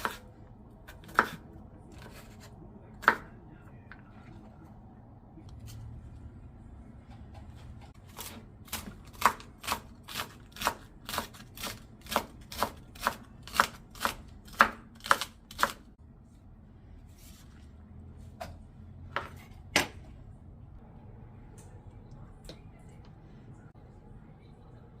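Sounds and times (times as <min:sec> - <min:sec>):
knife chopping on cutting board: 0:00.9 - 0:01.4, 0:03.0 - 0:03.3, 0:07.3 - 0:15.8.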